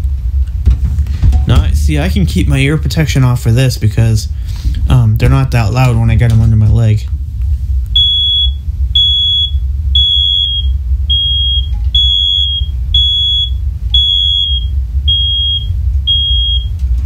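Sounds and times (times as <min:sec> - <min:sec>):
steady low rumble: 0:00.0 - 0:17.0
muffled smoke alarm beeping: 0:07.9 - 0:16.8.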